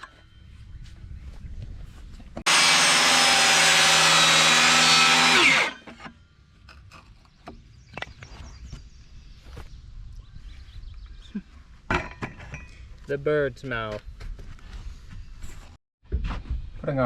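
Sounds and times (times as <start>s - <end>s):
electric saw cutting wood: 2.5s - 5.9s.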